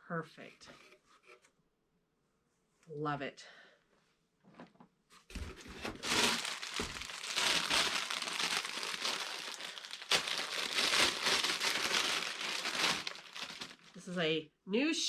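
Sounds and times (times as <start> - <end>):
packaging crinkling: 5.3 - 14.1.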